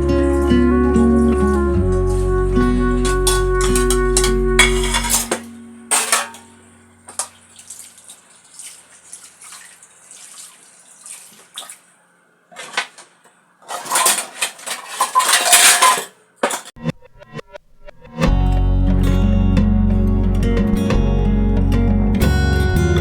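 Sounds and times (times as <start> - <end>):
dishes and cutlery clattering: 3.0 - 7.9, 12.5 - 16.8.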